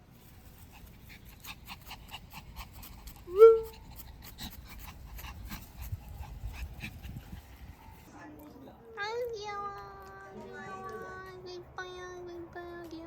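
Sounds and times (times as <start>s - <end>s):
dog panting: 0.3s - 8.1s
dog whining: 3.2s - 4.1s.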